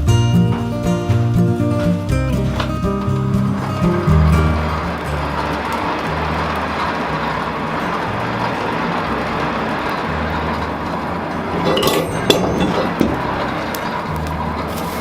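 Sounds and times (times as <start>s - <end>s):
abrasive tool grinding steel: 3.5s - 14.0s.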